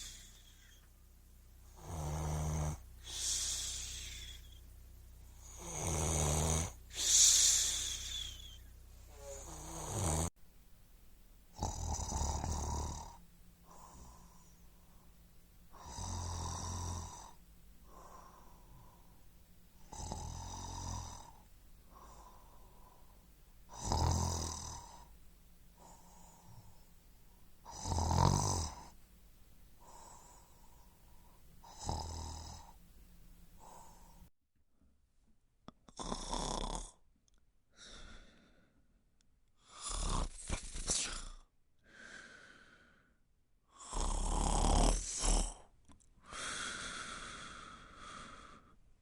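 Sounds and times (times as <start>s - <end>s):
person snoring: 0.0s - 0.9s, 1.6s - 10.3s, 11.5s - 15.0s, 15.7s - 19.2s, 19.8s - 25.1s, 25.8s - 26.9s, 27.6s - 29.0s, 29.8s - 32.8s, 33.6s - 34.2s, 35.9s - 37.0s, 39.6s - 41.4s, 43.7s - 45.6s.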